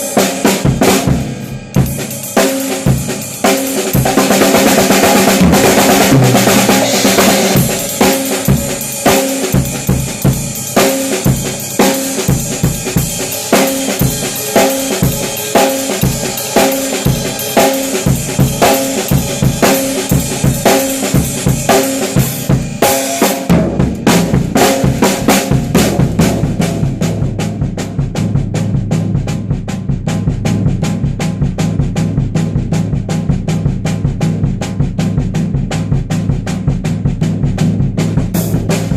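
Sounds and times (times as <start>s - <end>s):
heavy bass line: 0.0s - 11.5s, 14.0s - 22.8s, 23.5s - 38.9s
music with drum kit: 0.0s - 38.9s.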